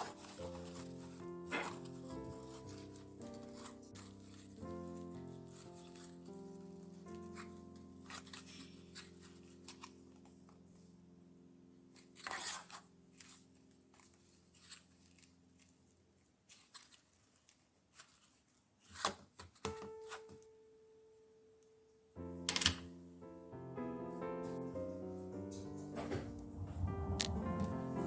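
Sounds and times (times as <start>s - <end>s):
short rustles: 24.4s - 28.0s.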